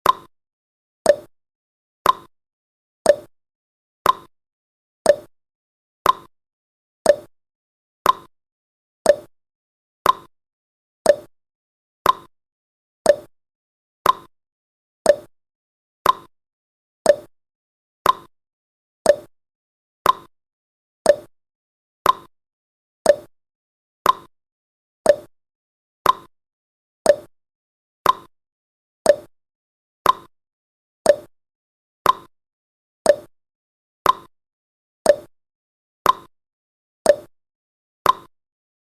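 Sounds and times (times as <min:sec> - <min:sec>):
timer ticking: 0:00.0 - 0:00.3, 0:01.1 - 0:01.3, 0:02.0 - 0:02.3, 0:03.1 - 0:03.3, 0:04.0 - 0:04.3, 0:05.1 - 0:05.3, 0:06.0 - 0:06.3, 0:07.0 - 0:07.3, 0:08.0 - 0:08.3, 0:09.0 - 0:09.3, 0:10.0 - 0:10.3, 0:11.0 - 0:11.3, 0:12.0 - 0:12.3, 0:13.0 - 0:13.3, 0:14.0 - 0:14.3, 0:15.1 - 0:15.3, 0:16.0 - 0:16.3, 0:17.0 - 0:17.3, 0:18.0 - 0:18.3, 0:19.1 - 0:19.3, 0:20.0 - 0:20.3, 0:21.0 - 0:21.3, 0:22.0 - 0:22.3, 0:23.0 - 0:23.3, 0:24.0 - 0:24.3, 0:25.0 - 0:25.3, 0:26.0 - 0:26.3, 0:27.1 - 0:27.3, 0:28.0 - 0:28.3, 0:29.1 - 0:29.3, 0:30.0 - 0:30.3, 0:31.1 - 0:31.3, 0:32.1 - 0:32.3, 0:33.1 - 0:33.3, 0:34.1 - 0:34.3, 0:35.1 - 0:35.3, 0:36.1 - 0:36.3, 0:37.1 - 0:37.3, 0:38.1 - 0:38.3.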